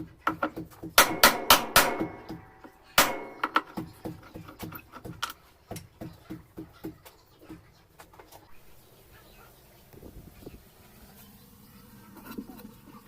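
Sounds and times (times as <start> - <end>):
metallic clanks: 0.2 - 5.9.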